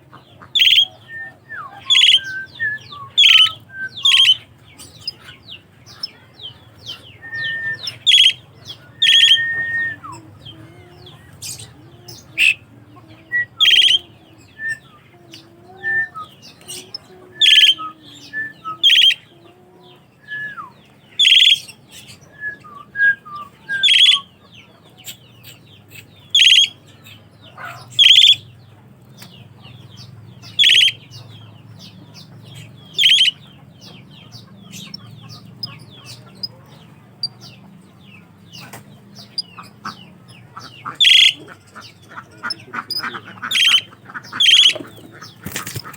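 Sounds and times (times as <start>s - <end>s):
starling calling: 0.0s - 19.4s, 20.1s - 24.4s, 25.0s - 28.6s, 29.2s - 37.7s, 38.4s - 45.9s
thin whistled bird notes: 0.6s - 5.1s, 7.2s - 10.3s, 13.3s - 19.2s, 20.2s - 24.3s, 26.4s - 26.7s, 30.4s - 31.0s, 33.0s - 33.4s.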